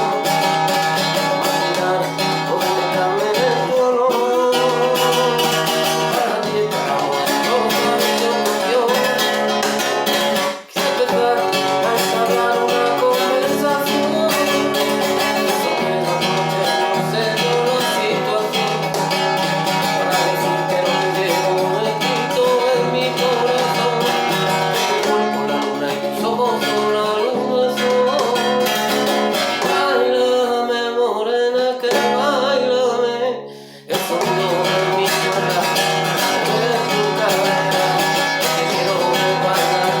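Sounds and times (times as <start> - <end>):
acoustic guitar music: 0.0 - 40.0.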